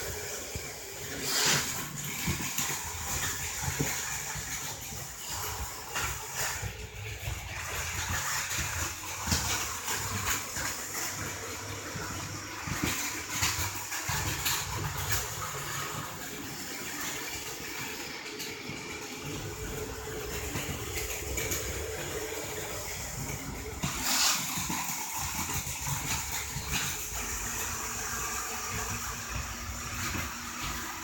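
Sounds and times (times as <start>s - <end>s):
toy train motor whirring: 0.0s - 6.7s, 14.2s - 31.0s.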